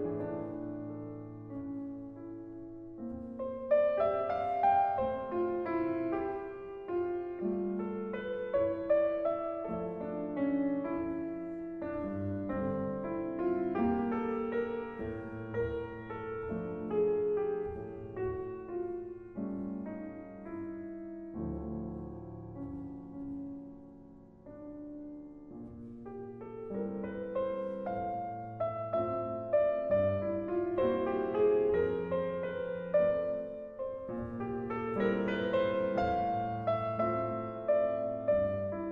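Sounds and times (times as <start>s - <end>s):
slow gentle piano music: 0.0s - 38.9s.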